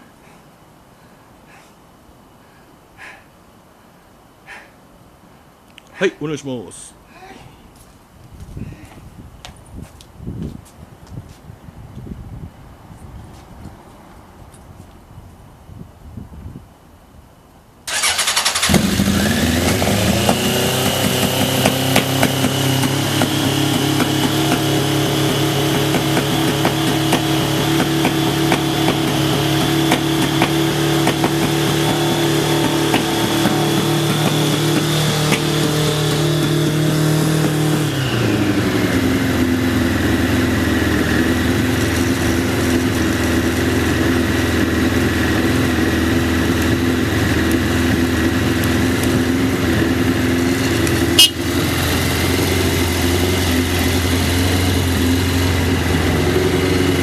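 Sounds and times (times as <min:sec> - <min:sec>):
motorcycle engine idling: 0:17.9 - 0:57.0.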